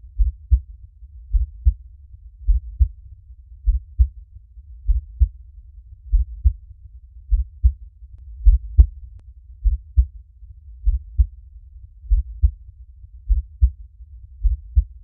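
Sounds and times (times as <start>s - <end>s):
heartbeat double thumps: 0.1s - 0.6s, 1.3s - 1.8s, 2.4s - 3.0s, 3.6s - 4.2s, 4.9s - 5.4s, 6.1s - 6.6s, 7.3s - 7.8s, 8.4s - 10.1s, 10.8s - 11.3s, 12.1s - 12.6s, 13.3s - 13.8s, 14.4s - 15.0s.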